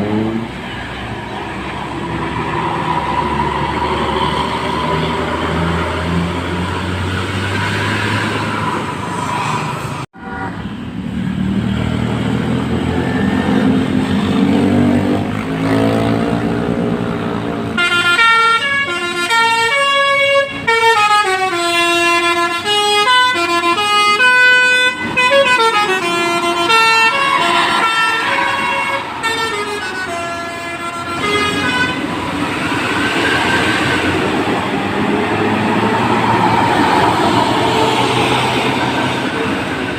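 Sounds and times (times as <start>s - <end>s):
bus engine: 0.0s - 39.9s
traffic noise: 0.0s - 39.9s
musical air horn tune: 17.8s - 32.1s.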